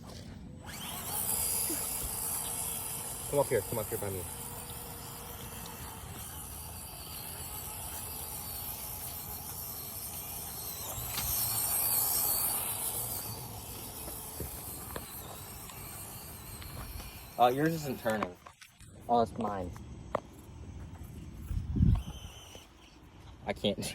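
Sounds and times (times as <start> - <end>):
small electric motors whining: 0.0 - 23.9
steady hiss: 1.3 - 18.2.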